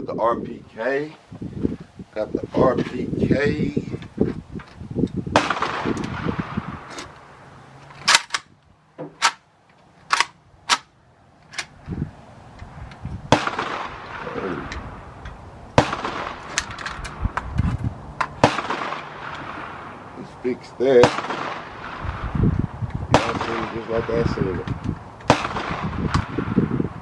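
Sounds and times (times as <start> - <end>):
rifle shots: 5.3 - 6.7, 13.3 - 14.7, 15.8 - 16.8, 18.4 - 19.9, 21.0 - 22.2, 23.1 - 24.5, 25.3 - 26.5.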